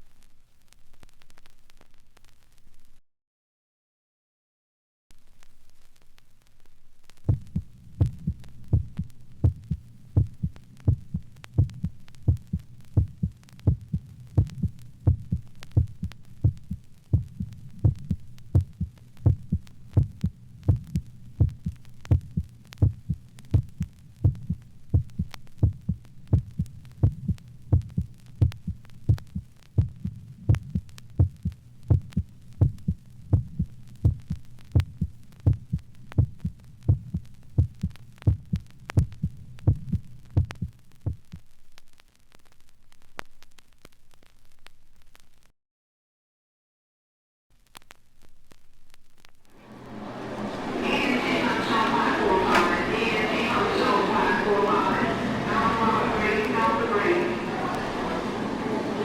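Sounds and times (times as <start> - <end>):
low hum: 5.1 - 41.5
heartbeat thuds: 7.2 - 41.4.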